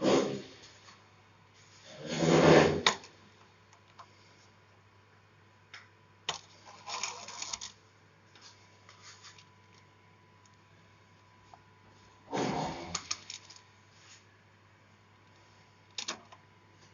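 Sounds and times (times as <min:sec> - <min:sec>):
faint steady hum: 0:00.0 - 0:16.9
rustling and scraping of parts: 0:06.3 - 0:09.9, 0:11.5 - 0:14.3.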